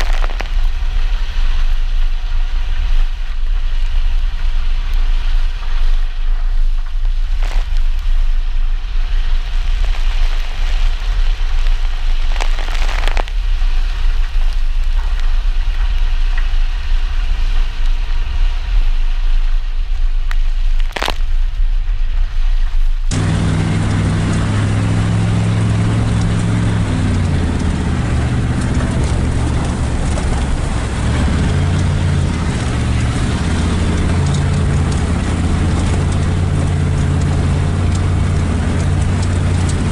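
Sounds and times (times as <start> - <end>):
truck engine rumbling: 0.0 - 13.2, 23.1 - 39.9
rain hiss: 0.0 - 39.9.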